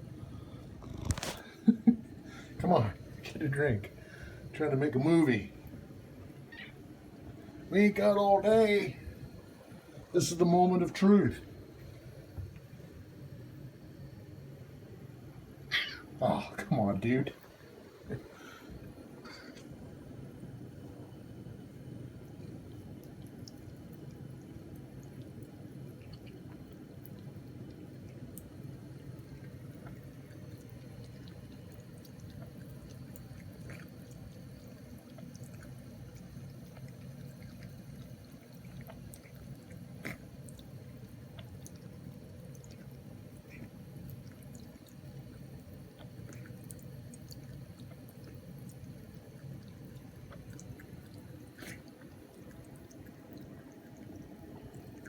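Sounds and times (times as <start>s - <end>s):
faint drips: 0.0s - 14.2s, 15.2s - 55.0s
water trickling: 20.2s - 55.0s.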